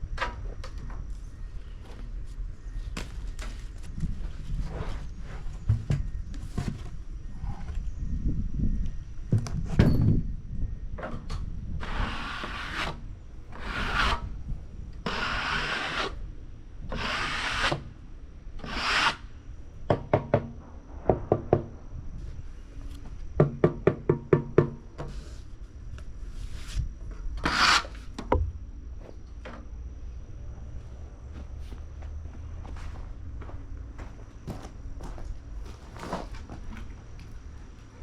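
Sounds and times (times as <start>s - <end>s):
wood scraping on wood: 11.8s - 14.4s, 15.1s - 16.2s, 16.9s - 17.8s, 18.6s - 19.2s.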